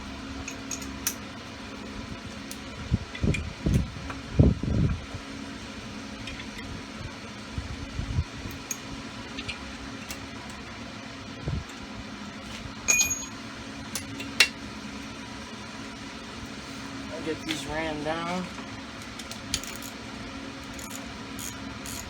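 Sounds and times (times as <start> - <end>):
fan-like hum: 0.0 - 22.0
bright ringing metal clink: 12.9 - 13.4.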